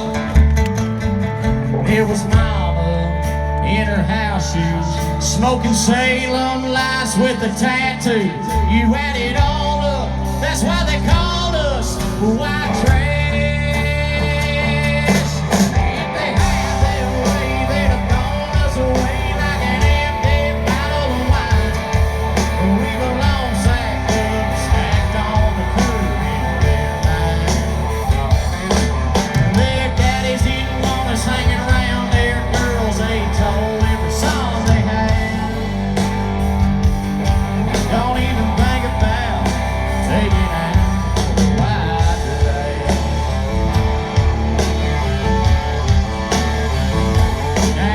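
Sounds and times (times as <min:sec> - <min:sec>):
electric guitar: 0:00.0 - 0:47.9
man singing: 0:01.5 - 0:36.4, 0:37.2 - 0:44.3, 0:45.0 - 0:47.9
steady drum beat: 0:11.1 - 0:47.9.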